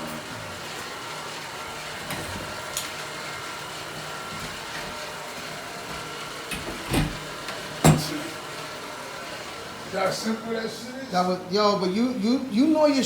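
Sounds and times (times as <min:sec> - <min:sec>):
steady mechanical hum: 0:00.0 - 0:13.0
knocks and clanks on pipe: 0:07.8 - 0:08.2.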